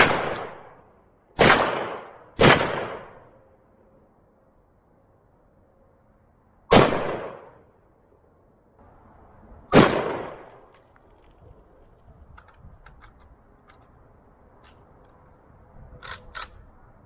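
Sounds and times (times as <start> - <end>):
loud gunshots with echo: 0.0 - 0.7, 1.4 - 3.2, 6.7 - 7.6, 9.7 - 10.5.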